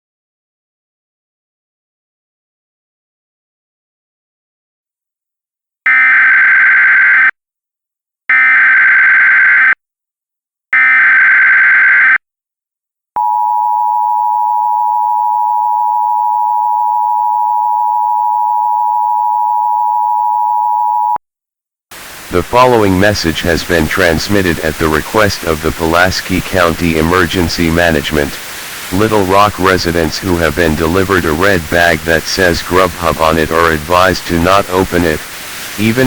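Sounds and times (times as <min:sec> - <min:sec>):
two-tone attention signal: 0:13.2 - 0:21.2.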